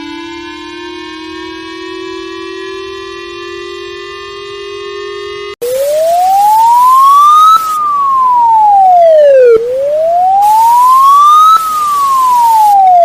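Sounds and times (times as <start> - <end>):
steady buzzing tone: 0.0 - 13.0
wailing siren alarm: 0.0 - 13.0
steady hiss: 9.9 - 12.8.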